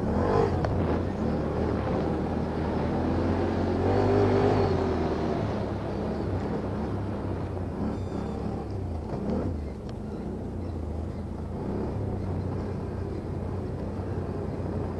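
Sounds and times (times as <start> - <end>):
engine revving: 0.0 - 10.3
quad bike engines running: 0.0 - 14.9.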